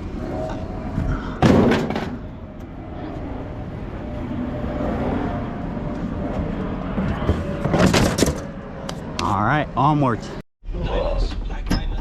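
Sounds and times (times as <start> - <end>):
steady low rumble: 0.0 - 7.8.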